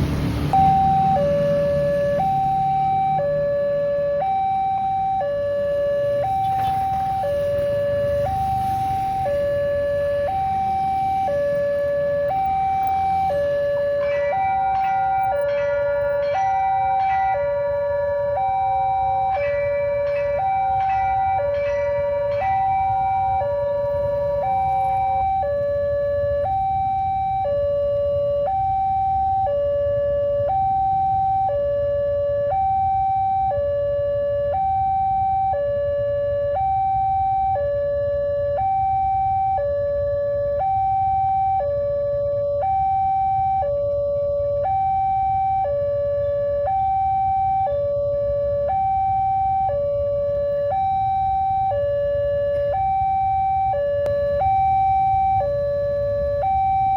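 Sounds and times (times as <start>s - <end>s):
two-tone warning siren: 0.0s - 56.9s
second warning tone: 0.6s - 3.5s, 6.0s - 9.4s.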